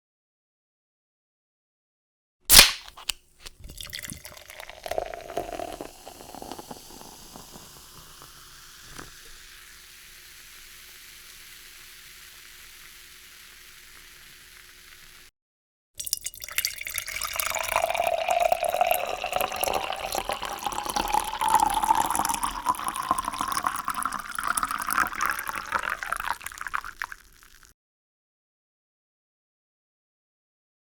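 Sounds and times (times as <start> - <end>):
soda can tab popping open: 2.5 - 15.0, 17.3 - 27.7
carbonation fizzing: 2.5 - 15.3, 16.0 - 27.7
soda pouring: 2.5 - 15.3, 16.0 - 27.7.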